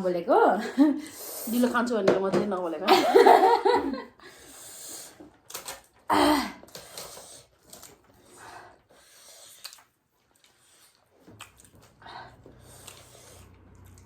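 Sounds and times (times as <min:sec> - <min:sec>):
person breathing noisily while eating: 0:00.9 - 0:01.6, 0:04.1 - 0:05.4, 0:06.6 - 0:11.1, 0:11.8 - 0:13.8.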